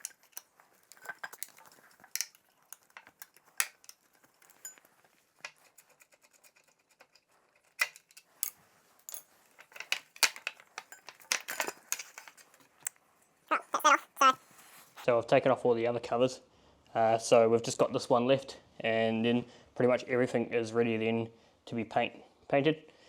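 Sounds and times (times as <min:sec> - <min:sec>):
metal parts clinking: 0:00.0 - 0:12.9.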